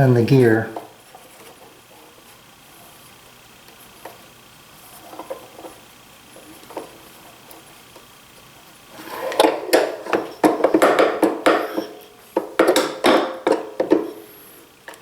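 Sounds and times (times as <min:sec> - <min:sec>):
metal tools clinking and scraping: 0:09.0 - 0:14.3.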